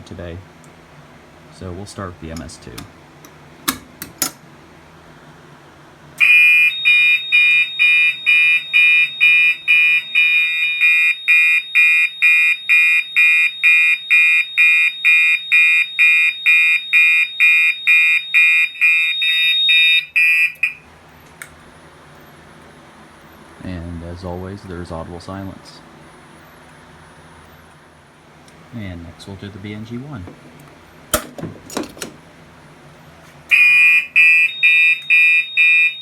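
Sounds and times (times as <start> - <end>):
pull station clicks: 2.3 - 4.4, 30.6 - 32.2
electronic alarm horn pulsing: 6.2 - 20.8, 33.5 - 36.0.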